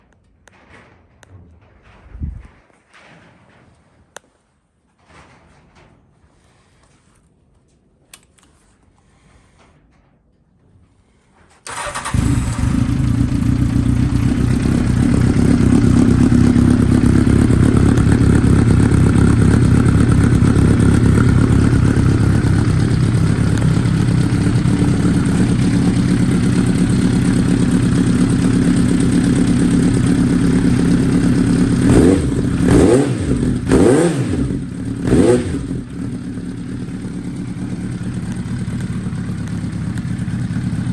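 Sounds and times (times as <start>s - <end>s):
motorcycle engine idling and revving: 11.7s - 40.9s.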